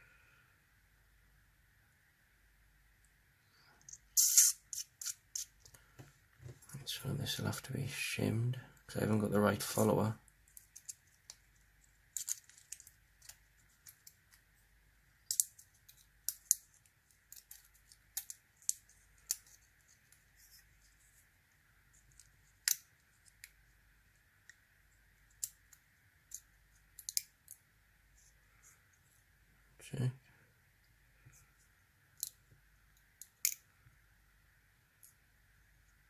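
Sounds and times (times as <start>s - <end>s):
small metallic clicks of lock parts: 25.4s - 27.6s.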